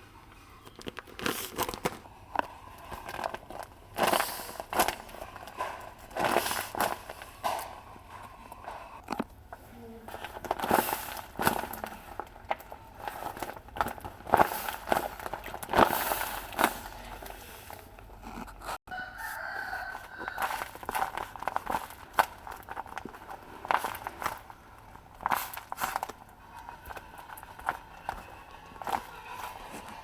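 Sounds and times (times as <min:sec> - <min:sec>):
paper crinkling and rustling: 0:00.1 - 0:08.3, 0:09.5 - 0:30.0
rooster crowing: 0:18.9 - 0:21.0.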